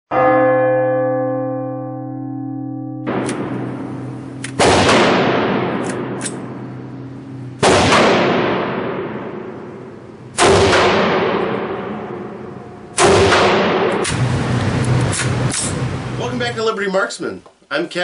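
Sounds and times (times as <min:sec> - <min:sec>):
heavy gunshot-like booms: 0:03.1 - 0:16.2.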